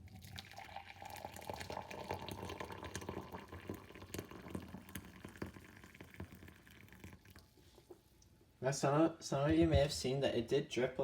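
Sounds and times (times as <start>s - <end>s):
tea pouring into a cup: 0.0s - 7.6s.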